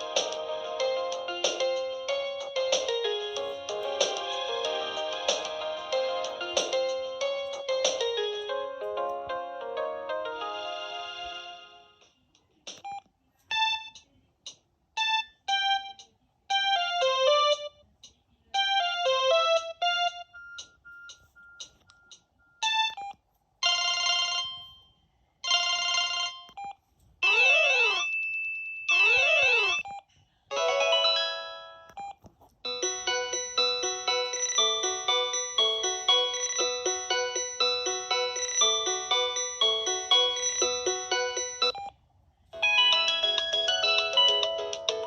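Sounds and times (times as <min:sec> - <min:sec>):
polyphonic ringtone melody: 0:00.0 - 0:11.1, 0:18.6 - 0:26.6, 0:27.2 - 0:29.8, 0:30.5 - 0:41.8, 0:42.6 - 0:45.0
beeping electronic ringtone melody: 0:15.0 - 0:17.7, 0:18.6 - 0:24.8, 0:25.4 - 0:41.9, 0:42.6 - 0:45.0
phone chimes: 0:32.7 - 0:41.8.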